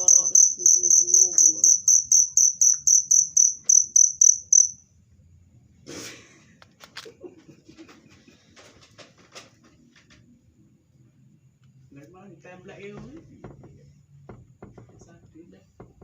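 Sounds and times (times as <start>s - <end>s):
cricket chirping: 0.0s - 5.0s.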